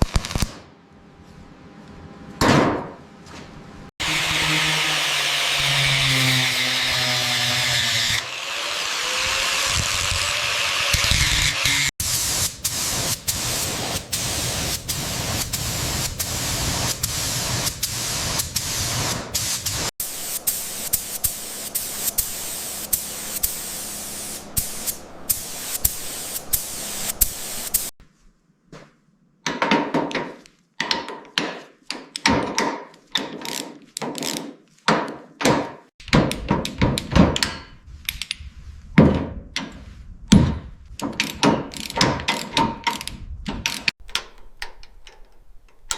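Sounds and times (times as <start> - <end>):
loud rushing tool noise: 4.0 - 11.9.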